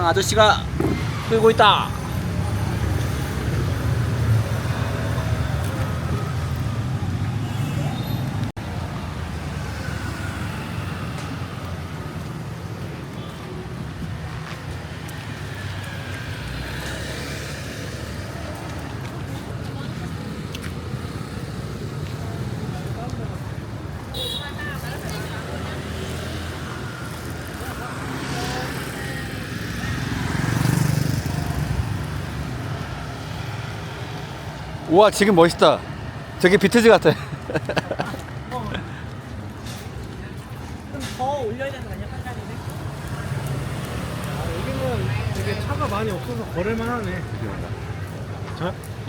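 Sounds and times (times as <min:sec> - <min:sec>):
hum of street traffic: 0:00.0 - 0:49.0
small motorbike engine passing: 0:25.7 - 0:32.5.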